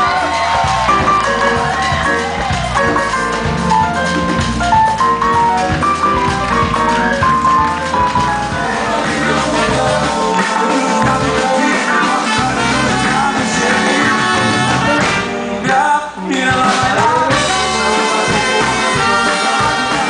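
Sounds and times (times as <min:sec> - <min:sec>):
samba percussion band playing: 0:00.0 - 0:15.4.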